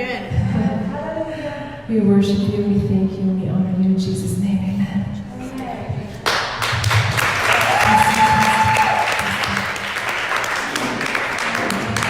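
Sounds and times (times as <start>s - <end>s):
audience clapping: 6.2s - 12.0s
person cheering: 7.5s - 9.6s.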